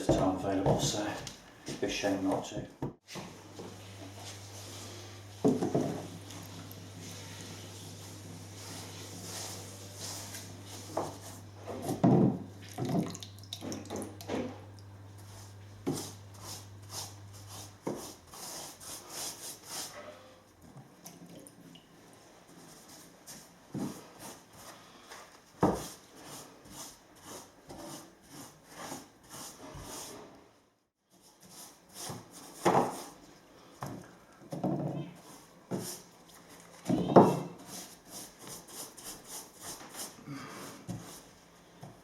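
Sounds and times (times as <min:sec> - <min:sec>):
low steady hum: 0:03.2 - 0:19.2
wooden knocks and thuds: 0:11.9 - 0:13.1.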